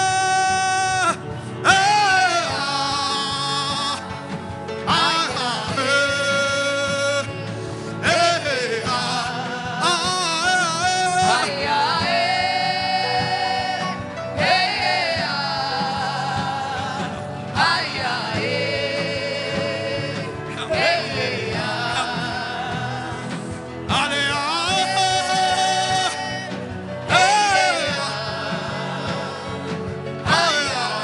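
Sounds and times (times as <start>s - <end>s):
low musical accompaniment: 0.0s - 31.0s
person singing with vibrato: 0.0s - 31.0s.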